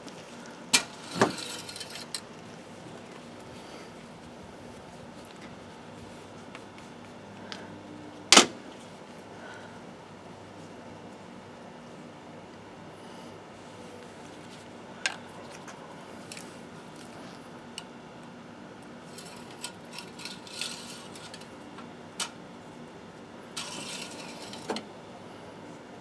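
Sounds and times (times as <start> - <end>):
dipstick clicks and metal scrapes: 0.8 - 2.2, 19.1 - 22.4, 23.6 - 24.8.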